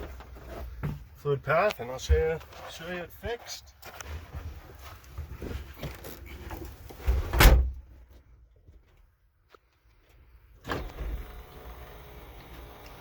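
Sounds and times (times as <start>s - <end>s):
car door slamming: 7.1s - 7.8s.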